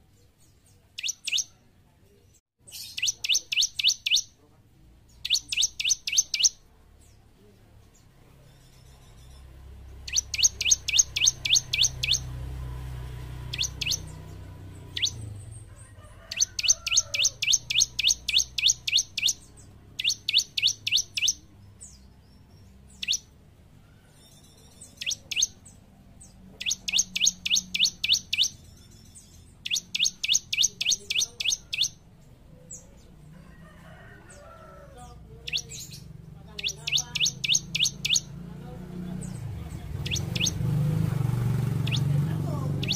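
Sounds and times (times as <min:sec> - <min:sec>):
bird chirps: 0:00.0 - 0:33.3, 0:34.3 - 0:42.9
bird singing sharp high notes: 0:01.0 - 0:01.5, 0:02.7 - 0:04.4, 0:05.2 - 0:06.6, 0:08.5 - 0:12.4, 0:13.4 - 0:15.4, 0:16.3 - 0:23.3, 0:24.1 - 0:25.8, 0:26.6 - 0:32.0, 0:35.5 - 0:38.3, 0:40.0 - 0:40.7, 0:41.7 - 0:42.9.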